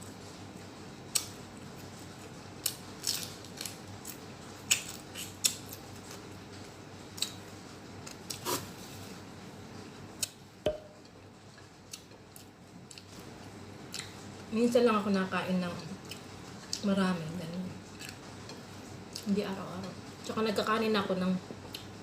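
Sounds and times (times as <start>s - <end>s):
crunching of fried fish chewed: 2.6s - 6.2s.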